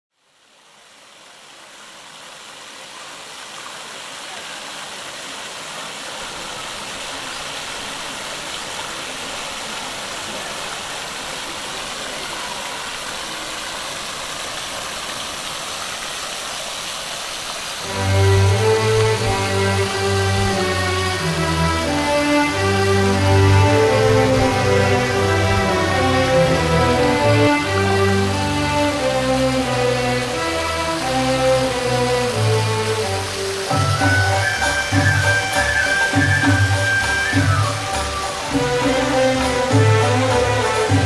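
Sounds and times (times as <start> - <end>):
running water rushing: 0.1 - 41.0
music: 17.8 - 41.0.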